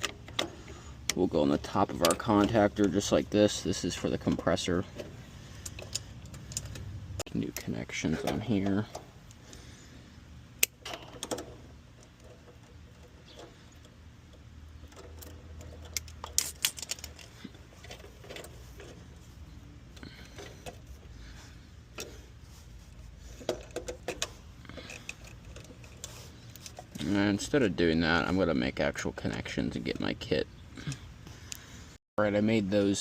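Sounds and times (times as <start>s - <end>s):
tools and wires clicking: 0.0s - 3.2s, 4.0s - 6.9s, 10.6s - 19.1s, 21.9s - 22.4s, 23.3s - 27.1s
low steady hum: 0.0s - 33.0s.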